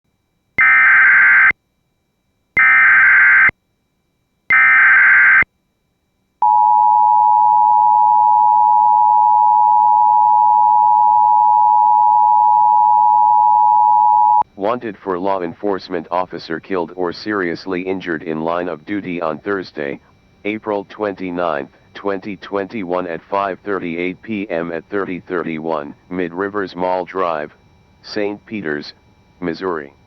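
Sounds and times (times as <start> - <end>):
two-tone attention signal: 6.4 - 14.4.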